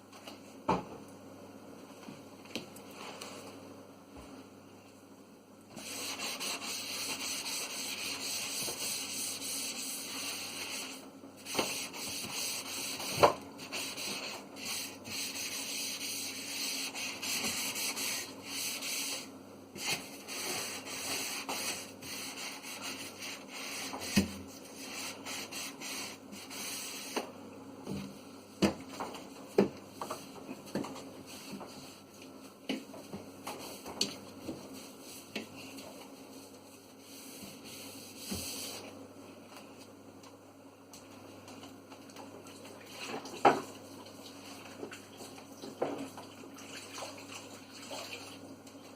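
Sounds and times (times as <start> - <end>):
cloth wiping and scrubbing: 5.8 - 27.2, 34.7 - 38.9.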